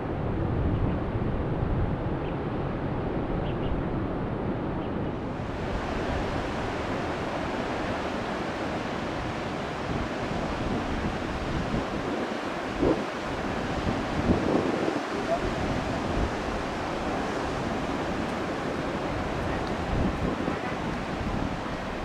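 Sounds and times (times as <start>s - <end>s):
strong wind on microphone: 0.0s - 22.0s
sea washing: 5.4s - 22.0s.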